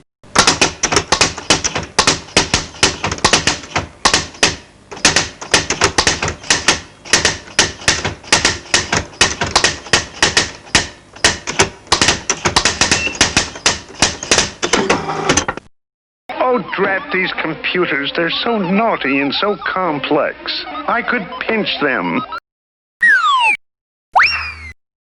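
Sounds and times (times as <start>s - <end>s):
rapid typing on keys: 0.3s - 14.7s.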